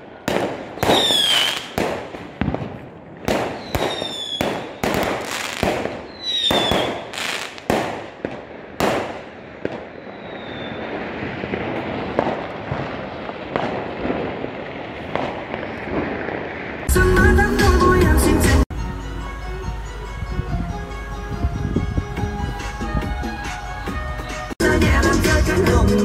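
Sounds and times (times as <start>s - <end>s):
firework whistle: 0.0s - 2.5s, 3.4s - 7.9s, 9.7s - 11.1s
fireworks banging: 0.0s - 16.9s
fireworks crackling: 0.0s - 18.7s.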